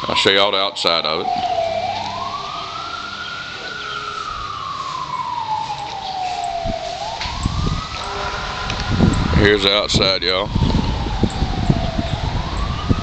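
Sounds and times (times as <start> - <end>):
siren wailing: 0.0 - 13.0.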